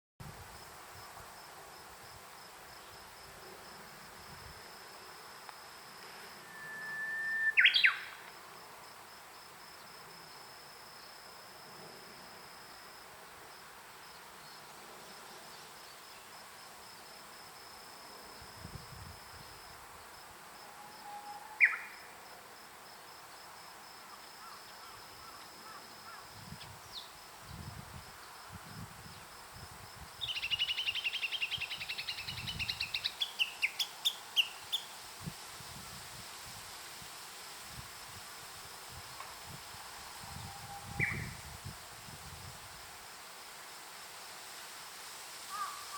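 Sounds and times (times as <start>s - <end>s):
bird song whistle and flourish: 6.4s - 8.2s, 21.0s - 22.0s, 30.2s - 34.9s, 40.3s - 41.4s.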